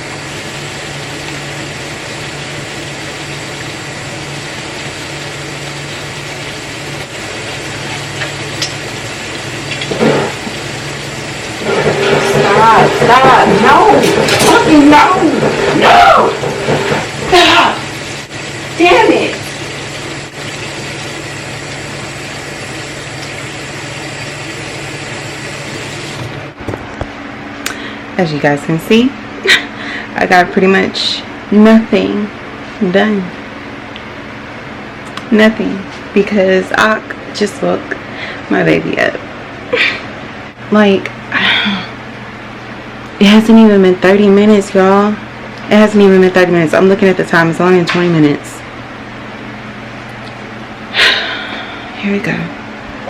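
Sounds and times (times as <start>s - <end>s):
appliance motor humming: 0.0s - 27.0s.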